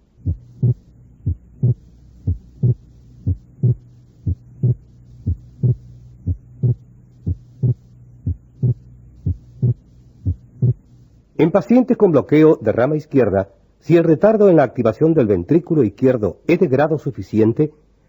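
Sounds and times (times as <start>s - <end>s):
heartbeat: 0.0s - 11.1s
steady low hum: 0.0s - 18.0s.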